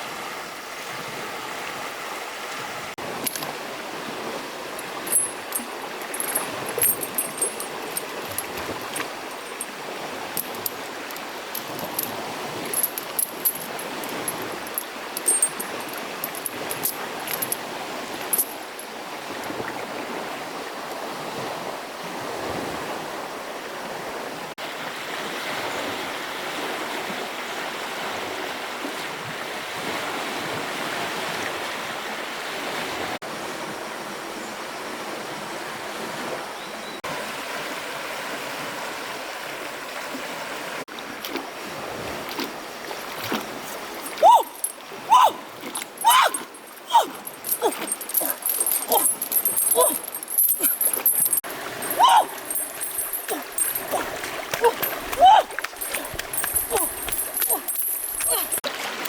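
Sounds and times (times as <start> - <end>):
water rushing: 0.0 - 23.2, 40.9 - 59.0.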